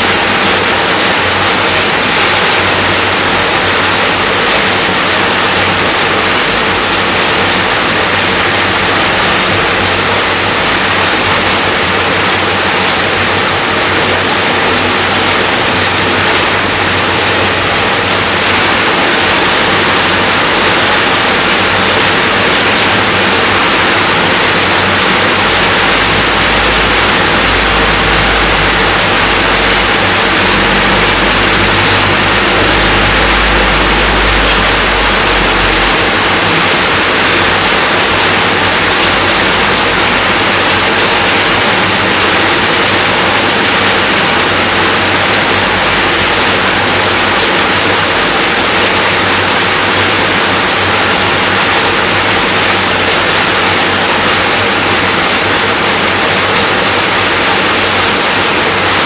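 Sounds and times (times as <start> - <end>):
dense rainfall hiss: 0.0 - 59.0
low rumble: 25.3 - 38.0.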